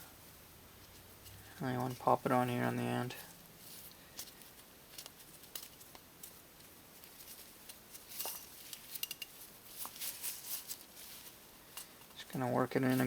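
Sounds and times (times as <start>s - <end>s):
small clicks and scuffing: 3.2s - 13.0s.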